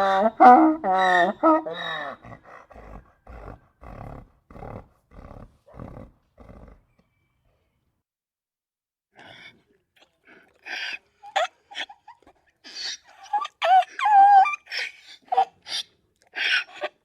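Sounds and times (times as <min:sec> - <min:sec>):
donkey braying: 0:00.0 - 0:05.8.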